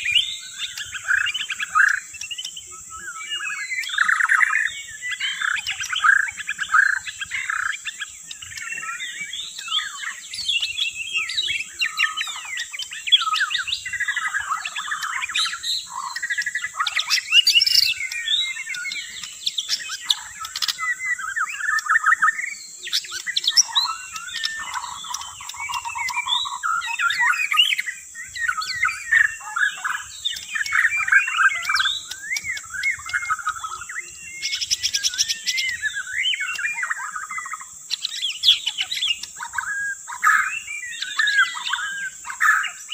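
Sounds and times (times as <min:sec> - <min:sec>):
songbird singing: 0:00.0 - 0:42.9.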